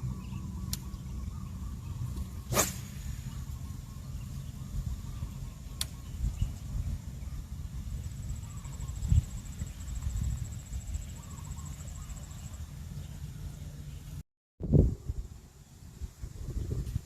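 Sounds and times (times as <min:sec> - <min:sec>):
steady low rumble: 0:00.0 - 0:17.0
sharp click: 0:05.8 - 0:06.0.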